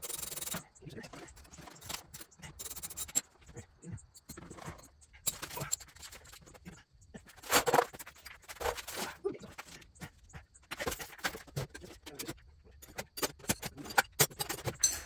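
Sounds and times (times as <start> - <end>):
hand tools scraping and knocking: 4.4 - 6.4.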